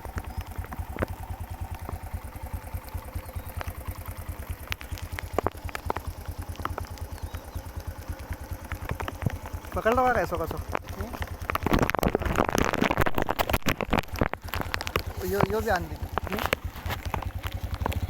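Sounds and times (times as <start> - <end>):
small engine chugging: 0.0 - 18.0
sharp clicks and knocks: 2.9 - 18.0.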